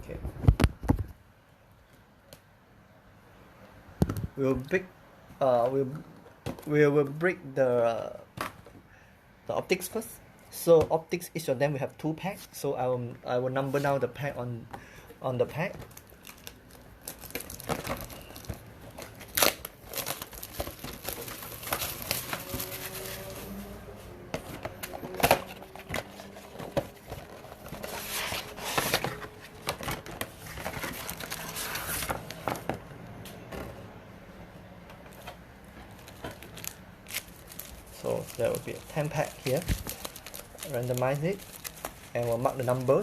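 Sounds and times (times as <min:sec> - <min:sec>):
foil wrappers crinkling: 0:15.6 - 0:23.6, 0:25.0 - 0:32.5, 0:35.9 - 0:43.0.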